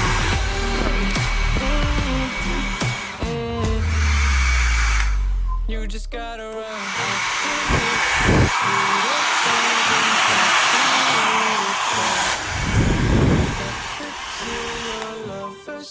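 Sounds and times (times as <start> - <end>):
hair dryer running: 0.0 - 5.4, 6.6 - 15.9
air buffeting microphone: 7.6 - 8.5, 12.3 - 14.9.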